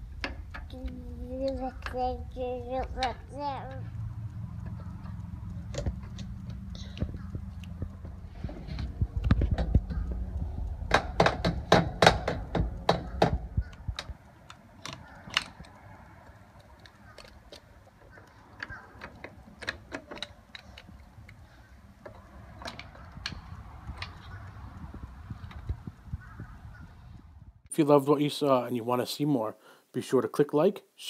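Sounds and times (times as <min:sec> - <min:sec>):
low rumble: 0:00.0 - 0:16.8, 0:20.8 - 0:27.7
plastic toy tools knocking: 0:10.9 - 0:13.4.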